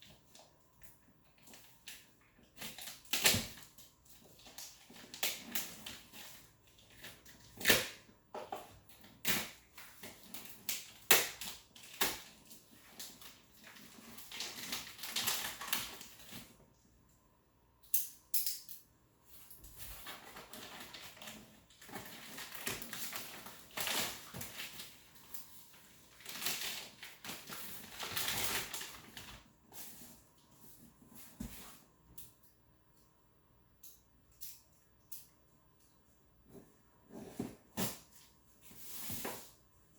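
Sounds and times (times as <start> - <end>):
packing crinkling and rustling: 1.4 - 16.6, 19.6 - 31.8.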